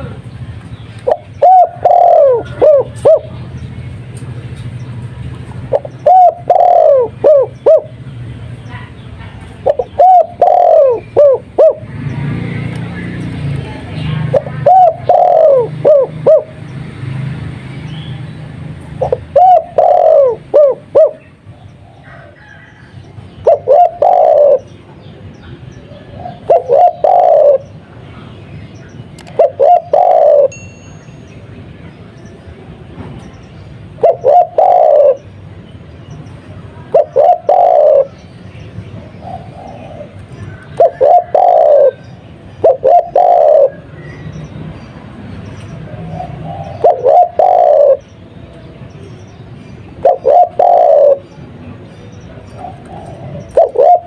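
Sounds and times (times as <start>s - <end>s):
dove cooing: 1.0s - 3.4s, 5.6s - 8.0s, 8.8s - 12.0s, 14.2s - 16.6s, 19.0s - 24.7s, 25.9s - 27.8s, 29.3s - 30.5s, 34.0s - 35.3s, 36.9s - 38.2s, 39.0s - 44.0s, 45.9s - 48.1s, 50.0s - 51.4s, 52.4s - 54.0s.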